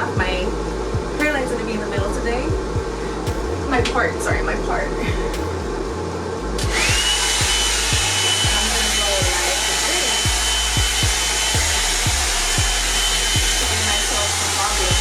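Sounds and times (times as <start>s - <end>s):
blow dryer brush running: 6.4s - 15.0s.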